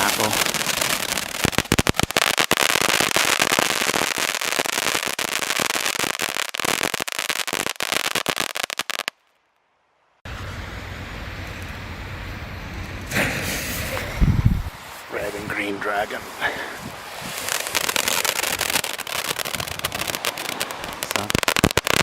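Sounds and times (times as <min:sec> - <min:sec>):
firework crackling: 0:00.0 - 0:09.2, 0:13.1 - 0:22.0
low wind rumble on microphone: 0:13.7 - 0:15.5, 0:16.6 - 0:17.6.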